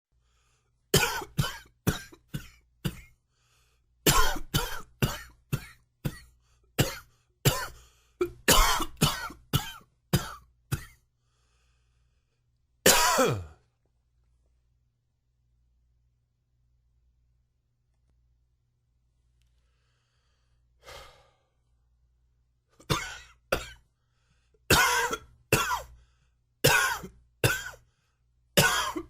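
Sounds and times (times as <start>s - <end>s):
man coughing harshly: 0.9s - 3.2s, 4.1s - 11.0s, 12.8s - 13.6s, 22.8s - 23.8s, 24.7s - 26.0s, 26.6s - 27.8s, 28.6s - 29.0s.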